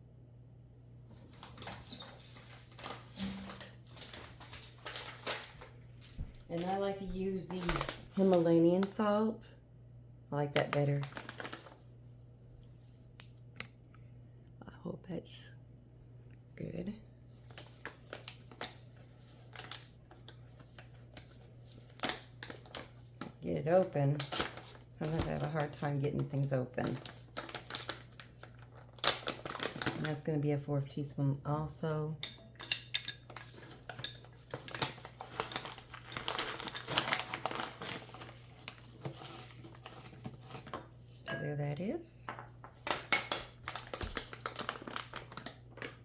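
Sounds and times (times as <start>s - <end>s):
packaging crinkling and rustling: 1.2s - 9.0s, 10.5s - 11.9s, 17.3s - 30.3s, 32.2s - 41.0s, 43.6s - 46.0s.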